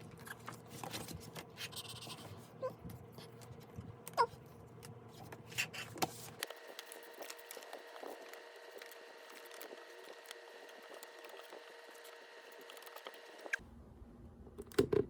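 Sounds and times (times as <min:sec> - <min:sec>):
low background hum: 0:00.0 - 0:15.0
packaging being handled: 0:06.3 - 0:13.5.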